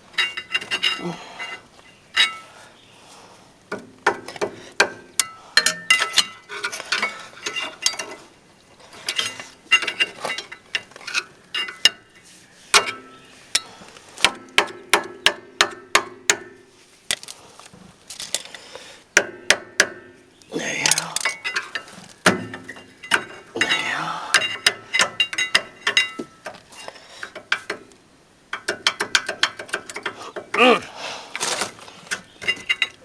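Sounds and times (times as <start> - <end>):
metal clinks and knocks: 0.1 - 2.5, 3.7 - 12.2, 20.8 - 27.9, 32.1 - 33.0
screwdrivers prying metal clinks: 20.8 - 21.9.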